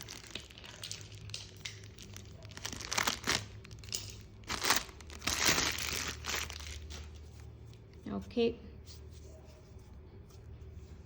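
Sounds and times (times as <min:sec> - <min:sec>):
packaging crinkling: 0:00.0 - 0:07.2.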